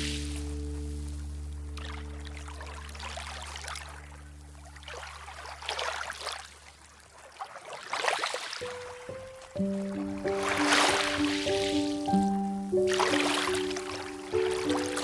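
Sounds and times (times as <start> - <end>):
held low chord: 0.0 - 5.6
sustained music notes: 0.0 - 5.7, 8.6 - 15.0
water-like noise: 0.0 - 15.0.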